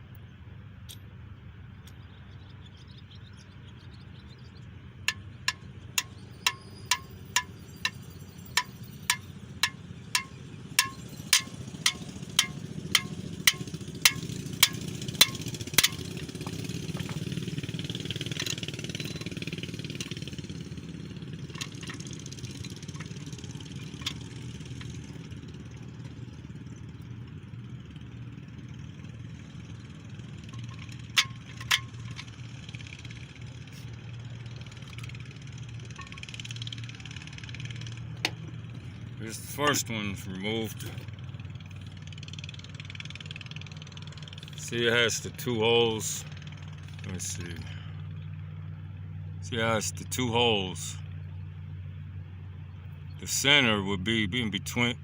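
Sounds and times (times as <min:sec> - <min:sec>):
hammer striking metal: 0:05.1 - 0:17.2.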